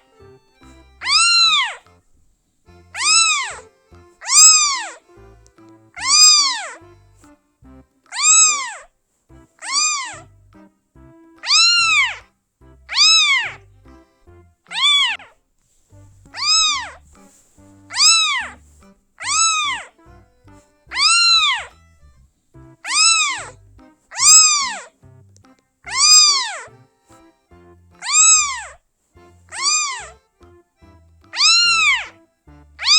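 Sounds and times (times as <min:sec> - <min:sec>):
kitten meowing: 0:00.0 - 0:02.0, 0:02.9 - 0:07.0, 0:08.1 - 0:08.9, 0:09.6 - 0:10.3, 0:11.4 - 0:12.3, 0:12.9 - 0:13.6, 0:14.7 - 0:15.3, 0:16.3 - 0:17.1, 0:17.9 - 0:18.6, 0:19.2 - 0:21.9, 0:22.8 - 0:24.9, 0:25.9 - 0:26.7, 0:28.0 - 0:30.2, 0:31.3 - 0:32.2.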